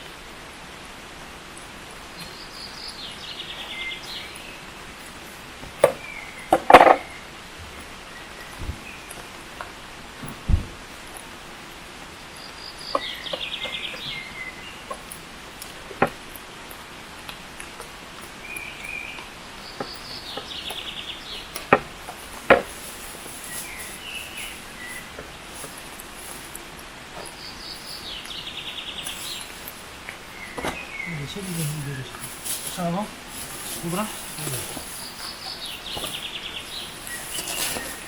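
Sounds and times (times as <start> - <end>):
songbird trilling: 12.4 - 15.0, 23.4 - 25.7, 27.3 - 33.0, 33.6 - 38.0.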